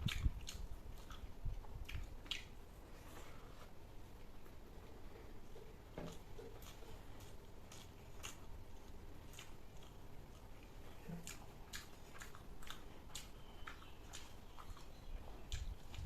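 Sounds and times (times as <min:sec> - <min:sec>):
wet mouth clicks: 0:00.0 - 0:02.6
person chewing food: 0:00.0 - 0:03.8, 0:04.8 - 0:16.0.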